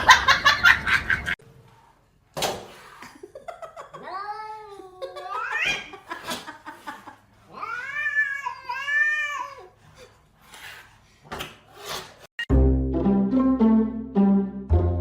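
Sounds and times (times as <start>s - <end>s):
cat yowling: 7.5s - 9.7s.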